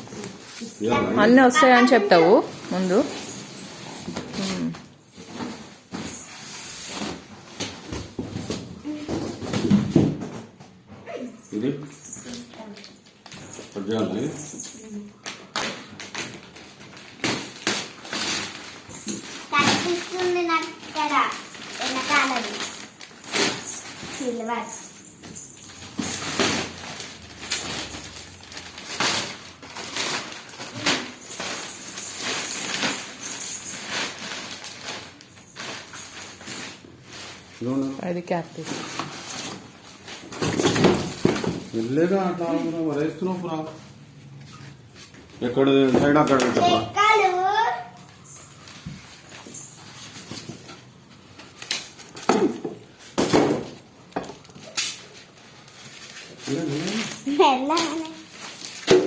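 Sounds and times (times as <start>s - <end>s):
packaging rustling: 12.3s - 38.0s, 48.0s - 59.0s.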